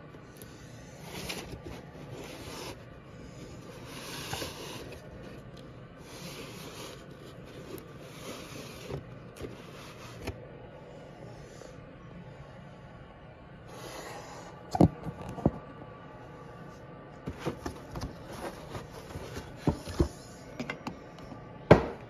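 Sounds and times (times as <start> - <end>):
packaging rustling and scraping: 0.9 - 10.4, 17.2 - 20.4.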